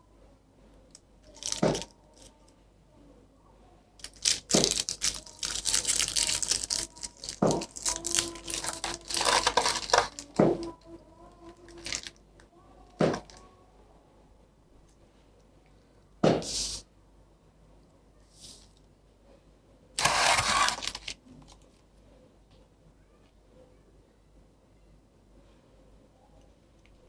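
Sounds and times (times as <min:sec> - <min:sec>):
plastic and paper crinkling: 0:01.3 - 0:02.3, 0:04.0 - 0:10.8, 0:11.4 - 0:12.2, 0:20.0 - 0:21.7.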